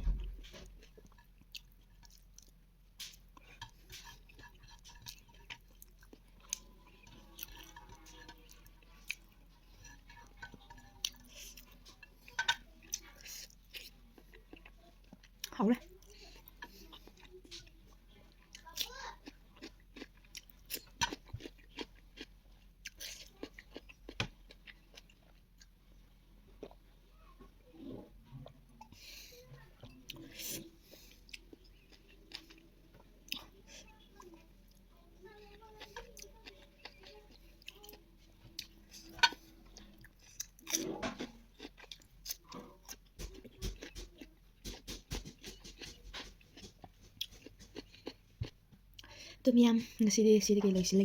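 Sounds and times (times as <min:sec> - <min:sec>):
person chewing and lip smacking: 0:18.3 - 0:25.7, 0:29.8 - 0:32.6, 0:35.6 - 0:49.2.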